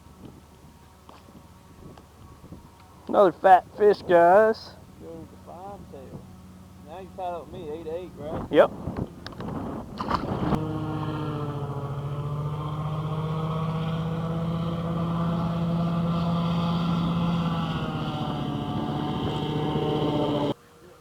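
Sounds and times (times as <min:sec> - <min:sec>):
boat motor running: 0:05.0 - 0:20.6.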